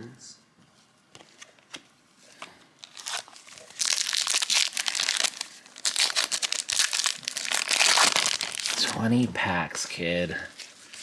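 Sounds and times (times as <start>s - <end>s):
foil wrapper tearing and crinkling: 2.8s - 9.0s.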